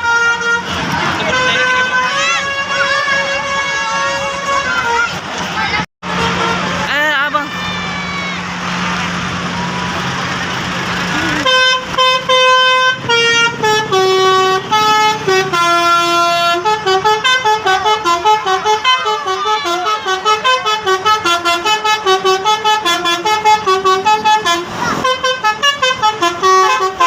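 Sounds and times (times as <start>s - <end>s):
musical air horn tune: 0.0s - 5.2s, 11.3s - 27.0s.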